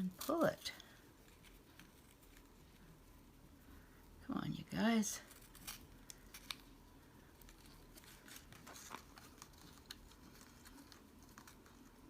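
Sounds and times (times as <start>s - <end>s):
paper rustling: 5.2s - 12.0s.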